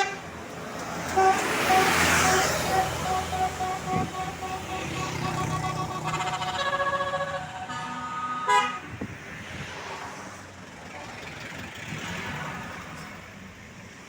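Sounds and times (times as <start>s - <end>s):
multi-tone air horn tune: 0.0s - 0.3s, 1.1s - 8.9s
bus engine: 0.0s - 14.0s
traffic noise: 0.0s - 14.0s.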